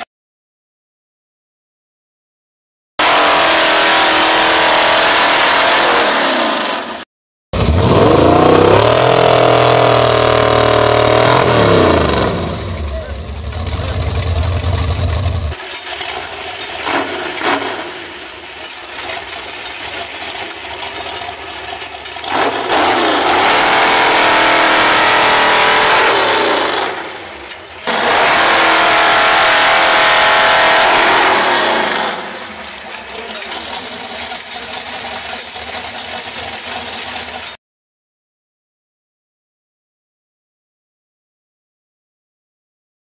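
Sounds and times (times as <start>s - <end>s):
chainsaw running: 3.0s - 7.0s, 15.5s - 37.6s.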